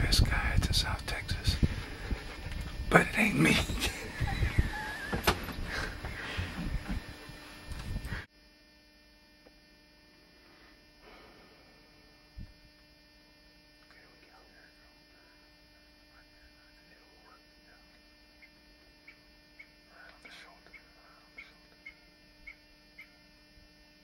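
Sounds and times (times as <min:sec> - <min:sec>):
electrical hum: 0:00.0 - 0:24.0
faint chirping: 0:18.4 - 0:19.8, 0:20.4 - 0:23.3.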